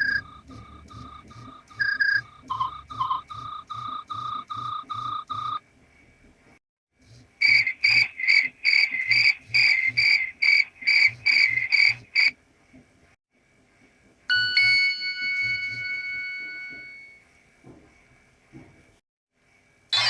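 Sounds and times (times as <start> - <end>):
bell-like ringtone chime: 14.3 - 17.2.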